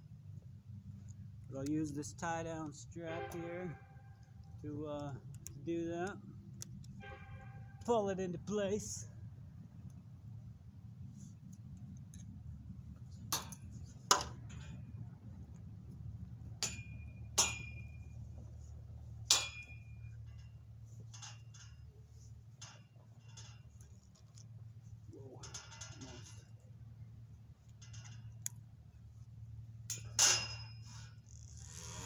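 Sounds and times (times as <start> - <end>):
steady low hum: 0.0 - 32.0
ratchet strap clicking: 29.9 - 32.0.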